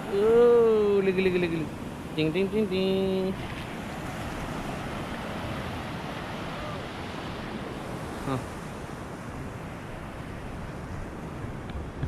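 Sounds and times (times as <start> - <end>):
sea surf washing on beach: 0.0 - 12.0
wind on microphone: 3.3 - 12.0.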